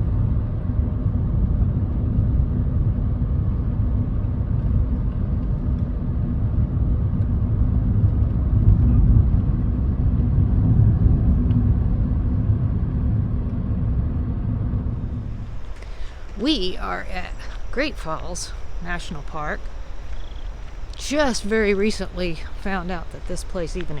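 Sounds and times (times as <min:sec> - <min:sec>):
car road and engine rumble: 0:13.8 - 0:24.0.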